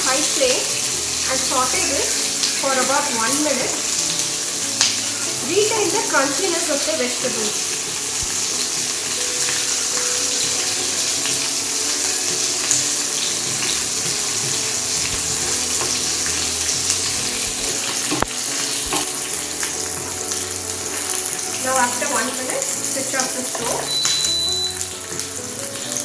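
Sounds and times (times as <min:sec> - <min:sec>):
vegetables sizzling in hot oil: 0:00.0 - 0:26.0.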